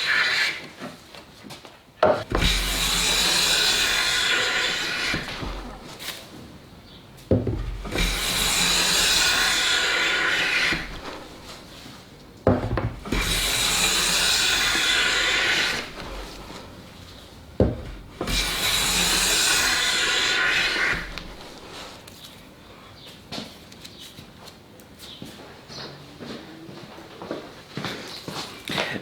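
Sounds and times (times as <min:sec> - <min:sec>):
hand plane rasping strokes: 0:02.2 - 0:22.1.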